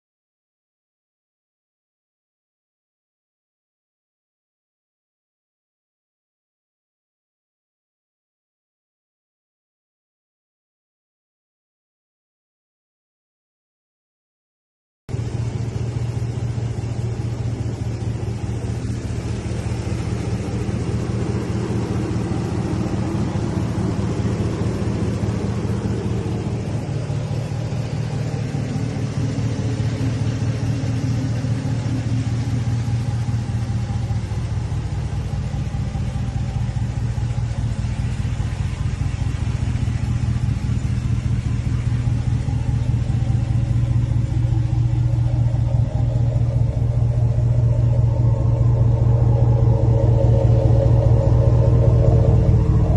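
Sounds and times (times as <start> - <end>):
truck engine idling: 15.1 - 52.9.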